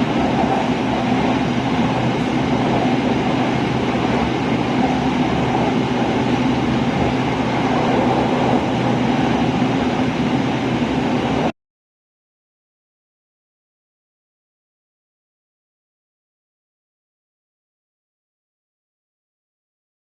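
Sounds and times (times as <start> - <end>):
electric train running: 0.0 - 11.5.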